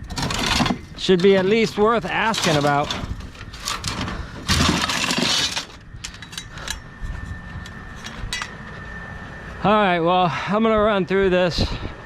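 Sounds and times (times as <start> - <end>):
scrap metal clattering: 0.1 - 6.7.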